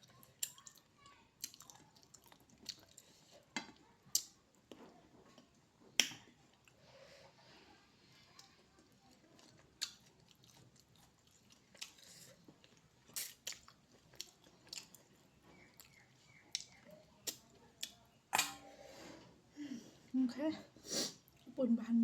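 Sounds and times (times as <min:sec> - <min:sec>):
person chewing: 0:00.0 - 0:06.8, 0:08.4 - 0:18.1.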